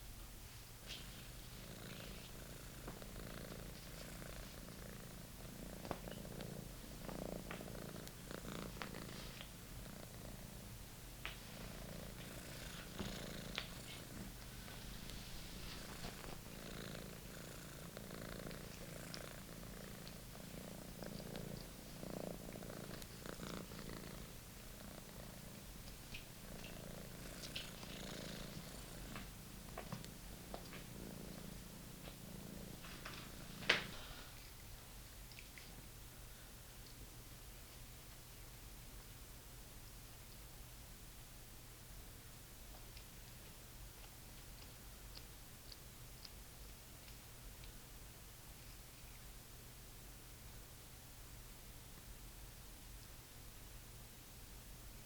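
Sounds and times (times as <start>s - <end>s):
kitten purring: 0.9s - 34.6s.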